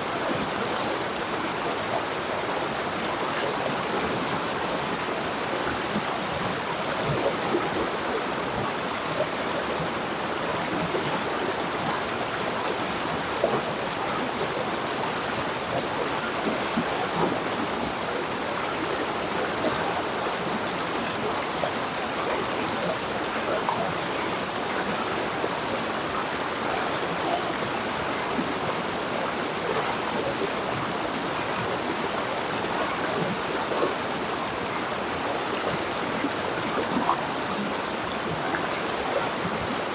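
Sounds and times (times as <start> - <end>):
river rushing over rocks: 0.0 - 39.9
small water splashes: 15.7 - 34.0.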